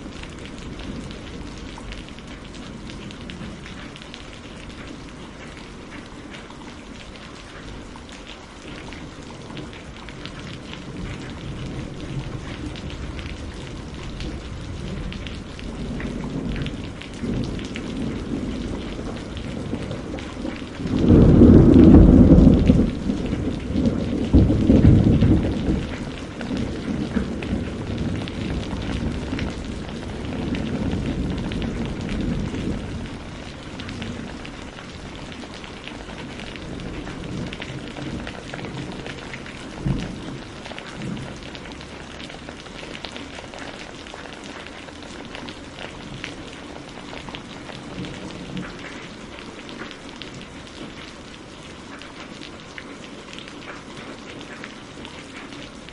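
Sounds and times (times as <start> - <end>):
steady rain: 0.0 - 55.9
thunderclap rumbling: 9.6 - 42.6
faint thunder thump: 14.6 - 34.4.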